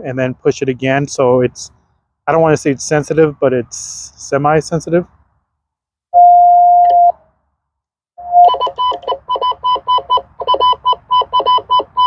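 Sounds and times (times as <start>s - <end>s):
radio morse code beeps: 6.2s - 7.2s, 8.2s - 12.0s.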